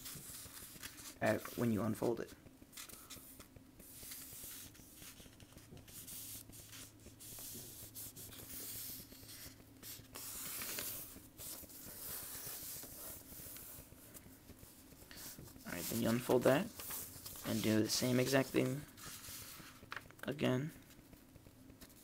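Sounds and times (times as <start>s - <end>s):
paper being folded and creased: 0.0s - 20.2s.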